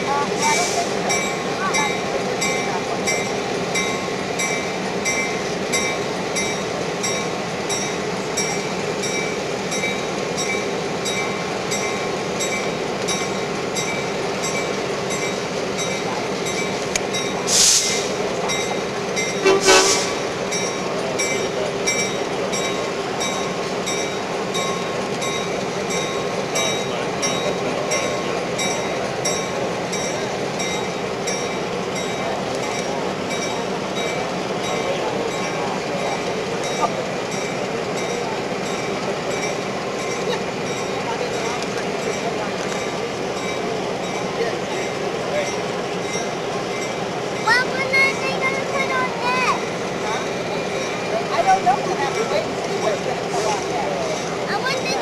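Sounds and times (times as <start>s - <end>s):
locomotive running: 0.0s - 55.0s
short sharp hisses: 17.5s - 18.2s, 19.6s - 20.2s.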